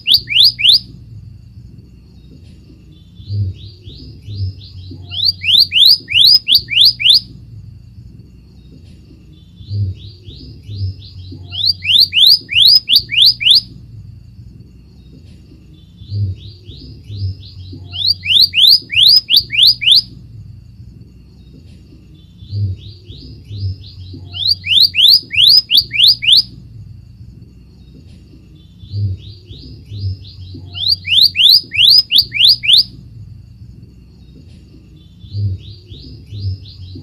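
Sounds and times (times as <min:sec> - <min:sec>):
bird whistling down-slurred notes: 0:00.0 - 0:00.9, 0:04.8 - 0:07.3, 0:11.3 - 0:13.7, 0:17.6 - 0:20.1, 0:24.2 - 0:26.5, 0:30.0 - 0:32.9.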